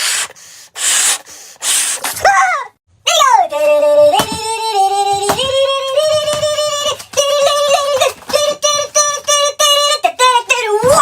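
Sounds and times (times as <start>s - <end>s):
high-pitched voice singing: 2.2s - 11.0s.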